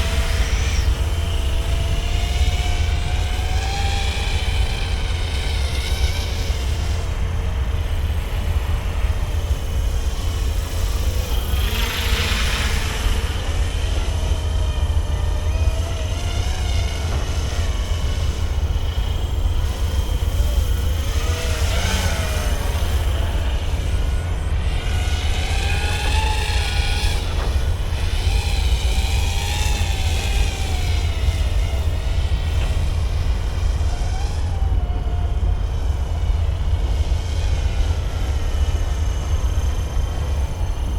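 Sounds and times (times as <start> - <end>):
propeller whine: 0.0 - 40.9.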